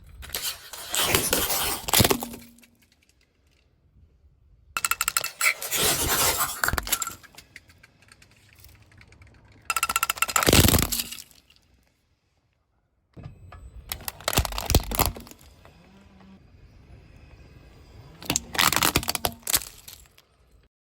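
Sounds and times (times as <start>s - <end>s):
tyre crushing brittle objects: 0.2s - 2.8s, 4.9s - 7.3s, 9.7s - 11.6s, 13.9s - 15.6s, 18.2s - 20.2s.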